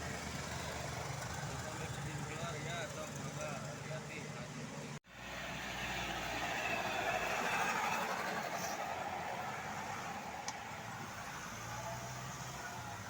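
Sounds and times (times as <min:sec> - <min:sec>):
vehicle passing by: 0:05.2 - 0:10.4.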